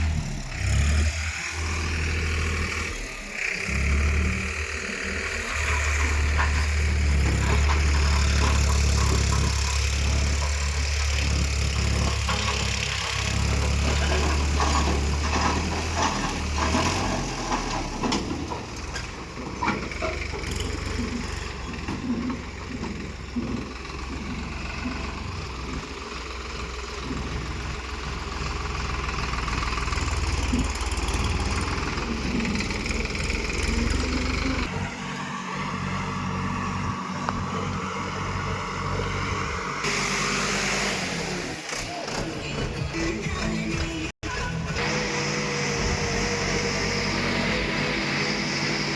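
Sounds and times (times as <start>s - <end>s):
diesel engine running: 0.0s - 48.9s
clanks and knocks: 6.1s - 25.9s.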